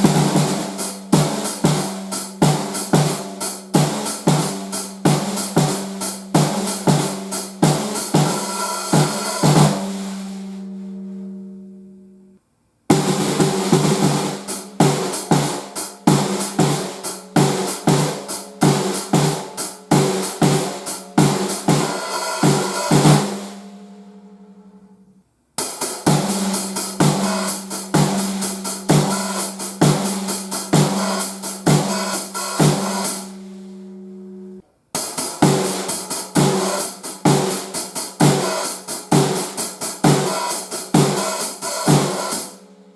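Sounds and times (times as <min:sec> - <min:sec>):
drum kit playing a steady beat: 0:00.0 - 0:11.1, 0:12.9 - 0:23.8, 0:25.6 - 0:42.7.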